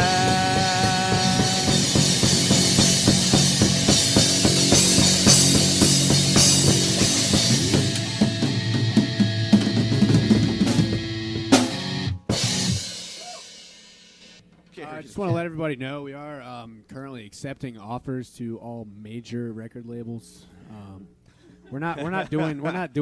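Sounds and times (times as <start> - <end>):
live band playing: 0.0 - 13.6
drum kit with cymbals: 0.0 - 14.8.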